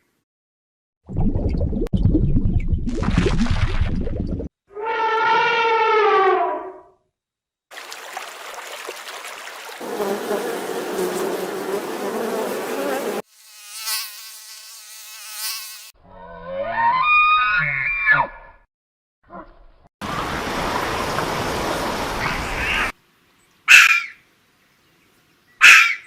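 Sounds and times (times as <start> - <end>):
insect buzzing: 9.8 - 16.0.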